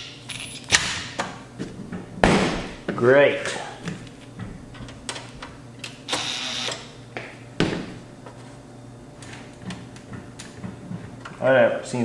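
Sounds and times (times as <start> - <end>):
sharp knock: 2.2 - 2.9.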